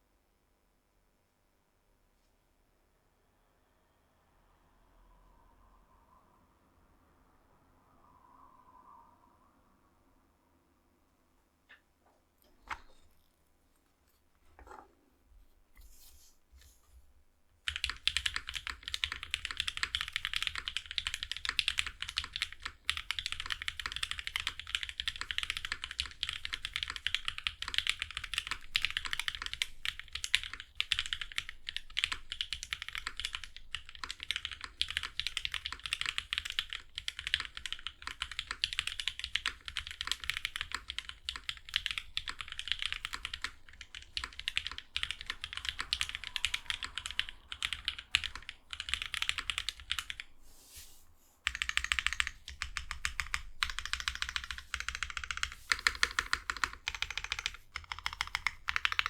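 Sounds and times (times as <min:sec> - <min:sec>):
fast typing on mechanical keyboard: 0:17.7 - 0:50.3, 0:51.4 - 0:59.0.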